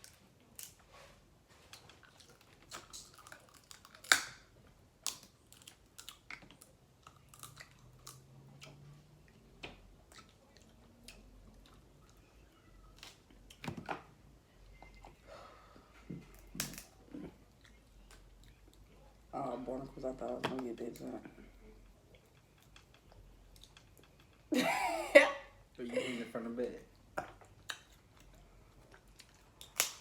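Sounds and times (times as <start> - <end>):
chewing: 0.0 - 4.3, 5.0 - 13.6, 16.3 - 19.3, 20.8 - 24.5, 27.0 - 30.0
crab shells cracking: 1.7 - 8.2, 29.4 - 30.0.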